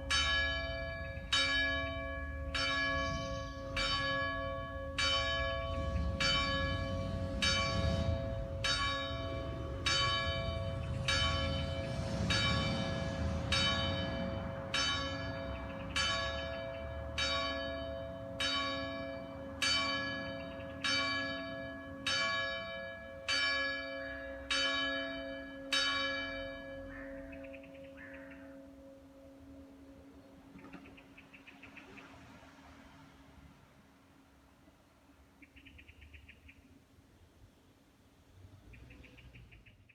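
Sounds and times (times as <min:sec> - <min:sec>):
church bell ringing: 0:00.0 - 0:30.3.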